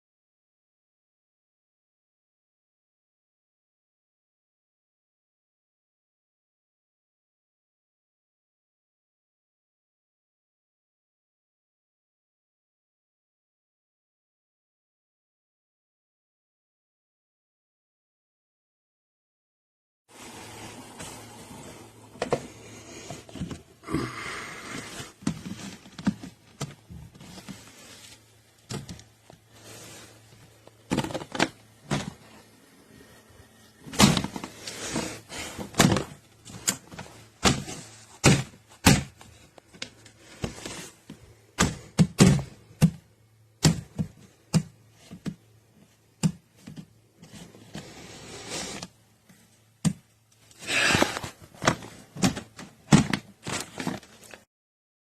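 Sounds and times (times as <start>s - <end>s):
plastic litter box knocks and scrapes: 30.9s - 32.4s, 33.9s - 39.3s, 50.6s - 54.4s.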